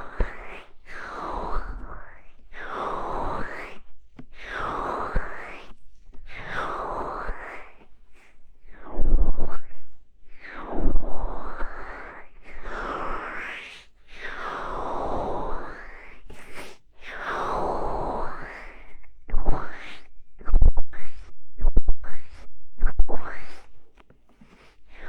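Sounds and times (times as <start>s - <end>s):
scratching on microphone: 23.1s - 25.0s
hands rubbing over microphone: 23.3s - 25.0s.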